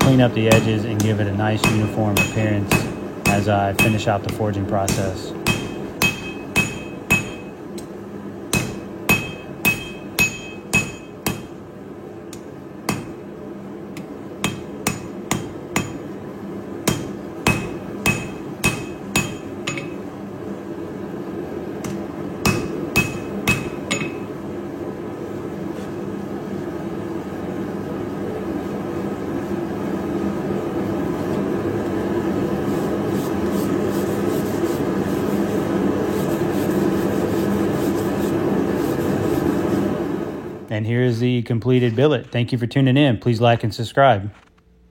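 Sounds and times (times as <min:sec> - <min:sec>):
hammer striking metal on anvil: 0:00.0 - 0:07.9, 0:08.5 - 0:11.6, 0:12.3 - 0:13.2, 0:14.0 - 0:16.1, 0:16.8 - 0:20.0, 0:21.8 - 0:24.3.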